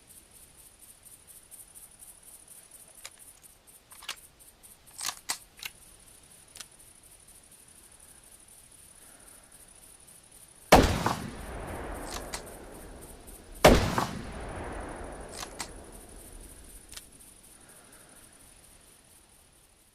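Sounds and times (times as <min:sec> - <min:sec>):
rifle bolt clicks: 0:03.9 - 0:04.2, 0:04.9 - 0:05.8, 0:12.0 - 0:12.8, 0:14.8 - 0:17.1
rifle shots echoing: 0:10.7 - 0:17.1.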